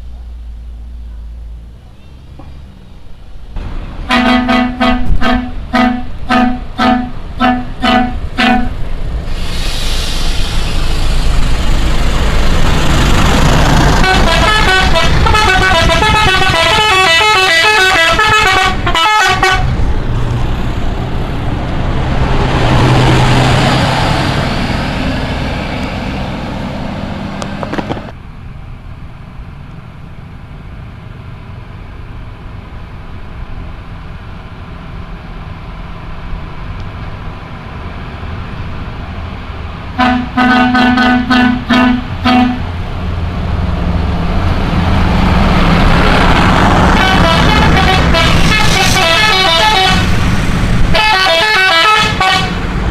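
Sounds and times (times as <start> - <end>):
bus engine rumble: 0.0 - 52.9
road noise: 0.0 - 52.9
traffic rumble: 0.0 - 52.9
multi-tone bus horn tune: 4.0 - 8.8, 13.9 - 19.8, 39.9 - 42.7, 46.8 - 50.2, 50.9 - 52.7.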